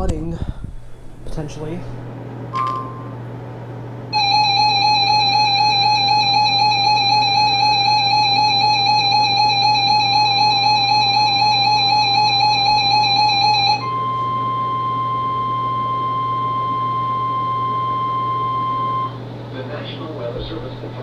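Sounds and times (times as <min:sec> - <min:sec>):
buzzy electronic alarm tone: 0:04.1 - 0:19.3.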